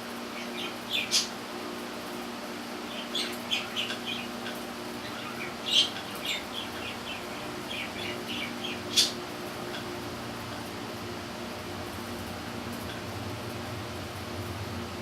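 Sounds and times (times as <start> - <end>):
steady low hum: 0.0 - 15.0
birds chirping: 0.3 - 1.4, 2.8 - 10.7
sharp bird calls: 0.3 - 1.4, 2.8 - 9.2.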